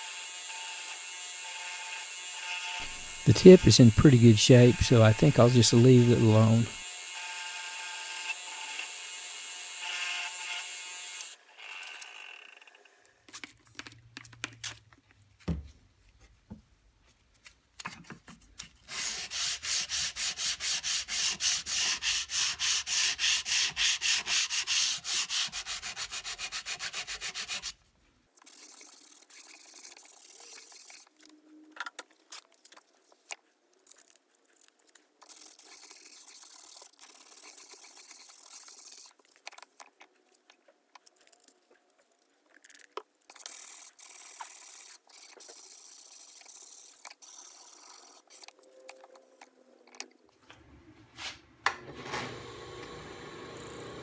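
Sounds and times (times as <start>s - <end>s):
sanding steel by hand: 18.9s - 27.7s.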